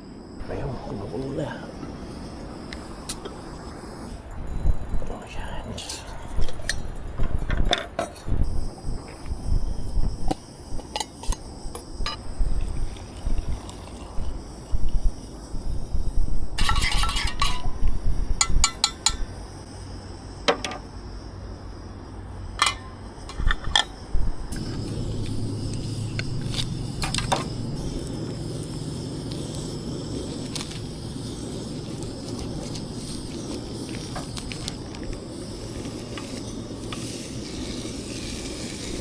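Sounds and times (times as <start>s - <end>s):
low rushing hiss: 0.0s - 39.0s
cookware clinking and clattering: 16.6s - 17.8s, 22.6s - 23.8s.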